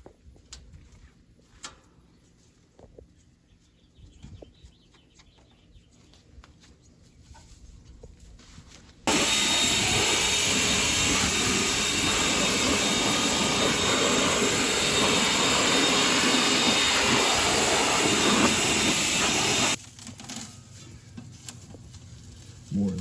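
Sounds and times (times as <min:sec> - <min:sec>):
air blower hissing: 0:09.1 - 0:19.8.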